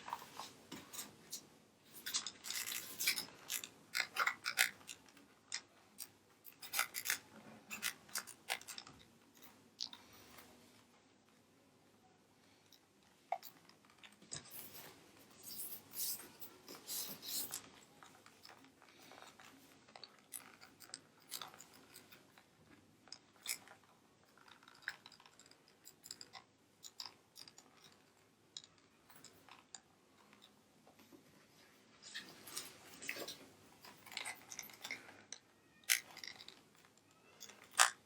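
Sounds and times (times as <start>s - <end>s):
plastic controller clicks and scratches: 2.0s - 9.0s.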